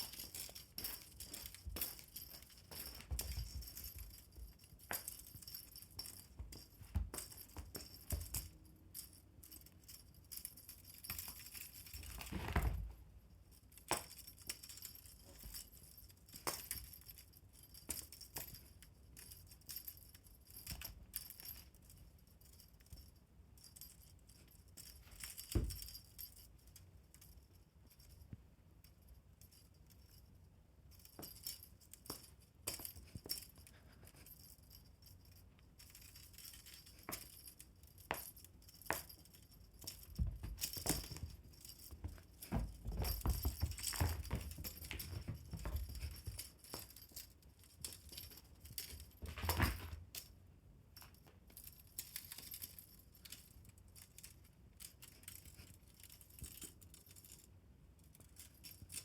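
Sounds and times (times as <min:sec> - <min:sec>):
pet toy jingling and rattling: 0:00.0 - 0:28.3, 0:28.9 - 0:50.4, 0:51.0 - 0:59.0.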